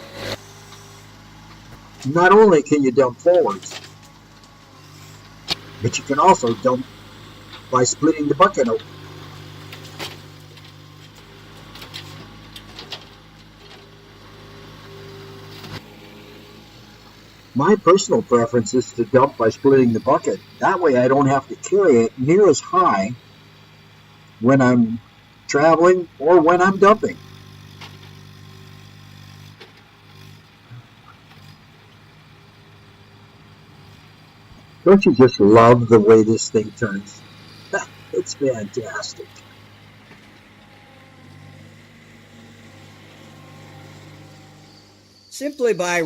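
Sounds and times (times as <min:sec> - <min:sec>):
brief higher whine: 0:00.0 - 0:03.7, 0:40.7 - 0:46.0
skid steer engine running: 0:00.0 - 0:46.0.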